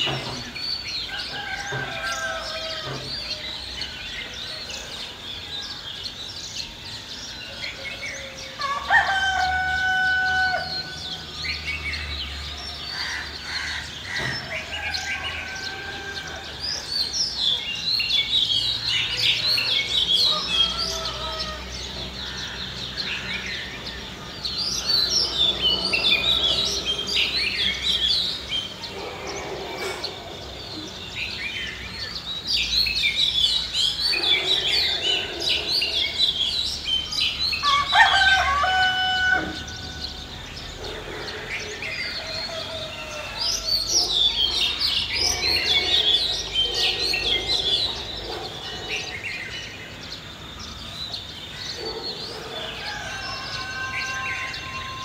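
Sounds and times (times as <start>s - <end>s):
rooster crowing: 1.0s - 3.6s, 7.7s - 11.2s, 13.8s - 16.8s, 19.4s - 22.5s, 37.6s - 40.3s, 41.9s - 44.0s, 52.5s - 55.0s
small birds chirping: 10.5s - 55.0s.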